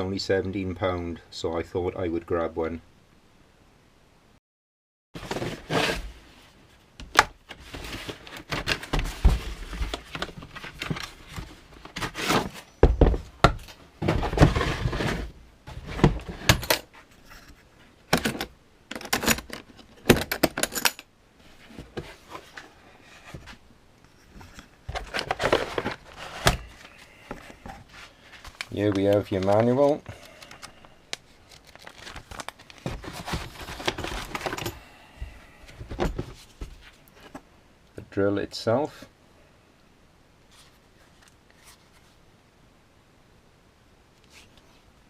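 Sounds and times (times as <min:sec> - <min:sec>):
knocks and clunks of contents: 0:05.2 - 0:06.1, 0:07.0 - 0:17.0, 0:18.1 - 0:21.0, 0:24.2 - 0:30.6, 0:31.9 - 0:37.4
packaging rustling and scraping: 0:05.2 - 0:06.8, 0:07.4 - 0:18.4, 0:21.4 - 0:34.9.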